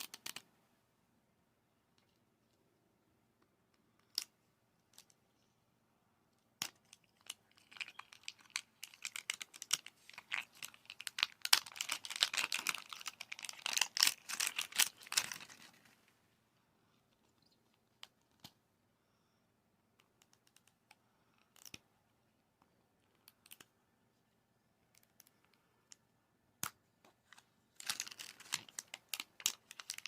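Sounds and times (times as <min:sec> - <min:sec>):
plastic wrapping tearing and crinkling: 0:07.2 - 0:15.9, 0:27.8 - 0:30.0.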